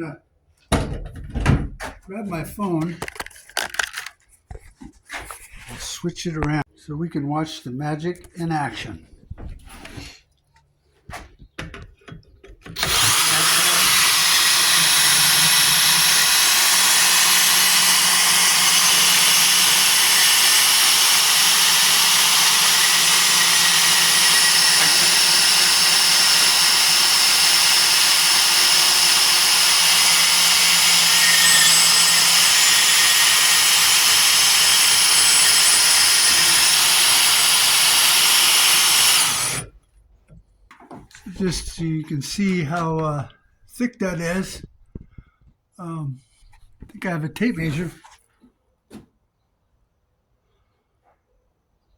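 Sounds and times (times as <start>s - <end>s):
band saw cutting steel: 12.8s - 39.7s.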